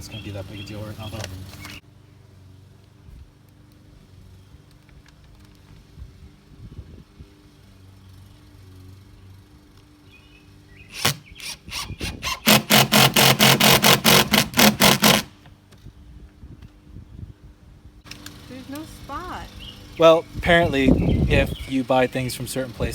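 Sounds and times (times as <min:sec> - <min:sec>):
power drill rapid pulses: 0:10.9 - 0:15.3.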